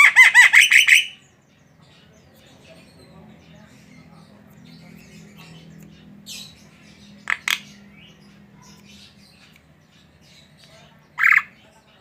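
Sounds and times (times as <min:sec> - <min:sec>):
bird rasping calls: 0:00.0 - 0:01.3, 0:05.4 - 0:09.7, 0:10.3 - 0:11.6.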